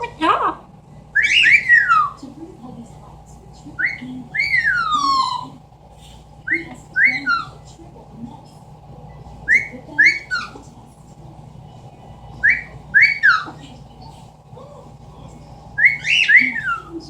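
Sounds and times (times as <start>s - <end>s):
parrot whistling: 1.1s - 2.2s, 3.8s - 5.6s, 6.5s - 7.6s, 9.4s - 10.6s, 12.4s - 13.6s, 15.8s - 17.0s.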